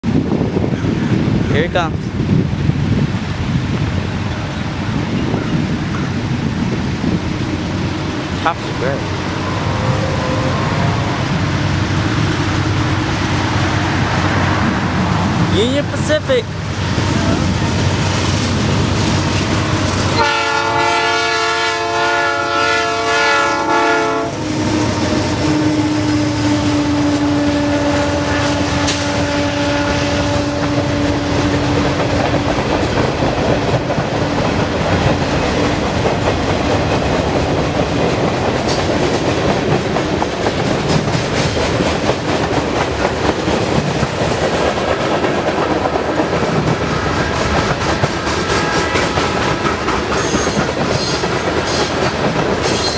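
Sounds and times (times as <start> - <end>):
train rumbling past: 0.0 - 52.9
wheels clacking over rail joints: 3.8 - 20.8, 24.1 - 52.9
train horn blowing: 9.3 - 11.5, 20.1 - 32.4.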